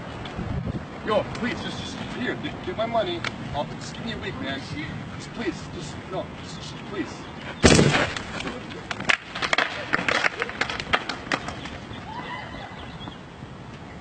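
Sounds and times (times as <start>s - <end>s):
gunshot bang: 7.6s - 8.3s.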